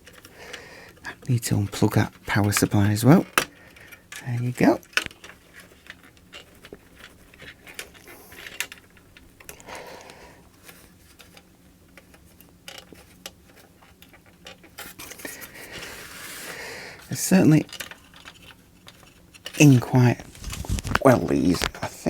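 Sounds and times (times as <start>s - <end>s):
plastic connectors clicking and scraping: 0.0s - 16.2s, 17.0s - 22.0s
soft breaths: 0.2s - 1.2s, 3.5s - 4.2s, 9.4s - 11.2s, 15.1s - 17.2s.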